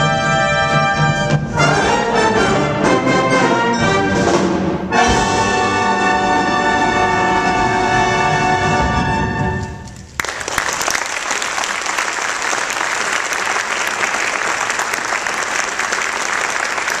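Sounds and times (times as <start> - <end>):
brass band chord: 0.0 - 9.8
audience applause: 9.9 - 17.0.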